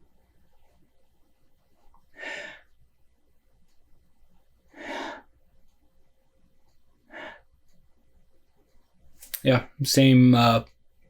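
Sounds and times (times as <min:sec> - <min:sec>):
man breathing: 0:02.1 - 0:02.8, 0:04.7 - 0:05.4, 0:07.0 - 0:07.5.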